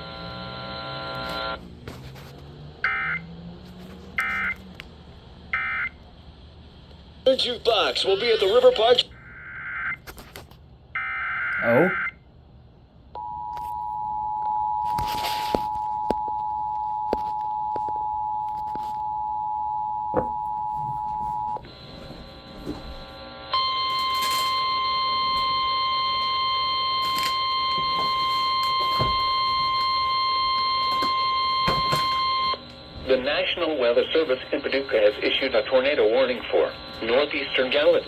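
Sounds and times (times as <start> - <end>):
single-tone warning alarm: 0.0 - 1.6, 2.8 - 3.4, 4.2 - 4.6, 5.5 - 6.0, 11.0 - 12.2, 13.2 - 38.0
radio static clicks: 27.1 - 38.0.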